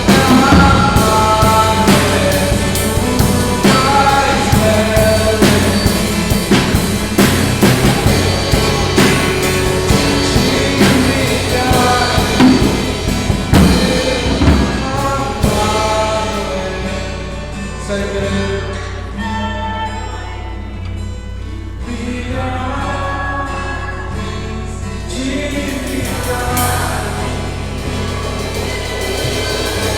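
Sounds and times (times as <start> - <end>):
drum kit hits: 0.0 - 16.6
people singing: 0.0 - 20.7, 21.8 - 29.9
acoustic guitar: 0.0 - 29.9.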